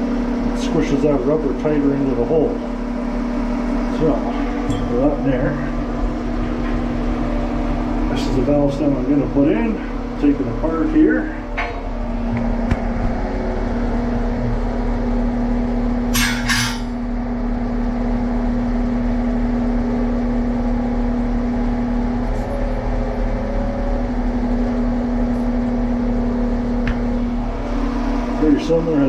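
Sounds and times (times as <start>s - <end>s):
machine humming: 0.0s - 29.0s.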